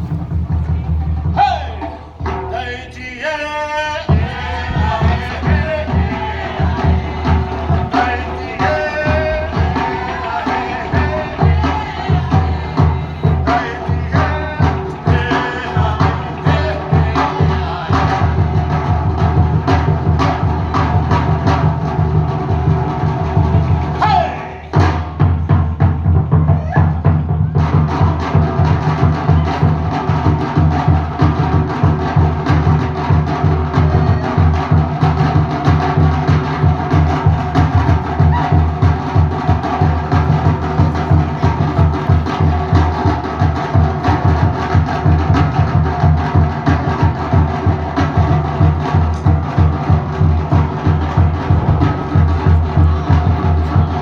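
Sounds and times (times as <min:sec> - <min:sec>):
deep drum: 0:00.0 - 0:02.8, 0:04.1 - 0:54.0
wooden slit drums: 0:04.1 - 0:23.8.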